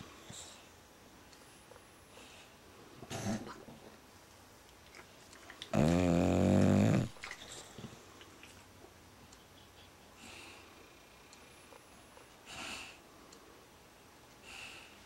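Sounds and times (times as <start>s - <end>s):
dog snoring: 5.7s - 7.2s
dog snorting: 5.7s - 8.0s.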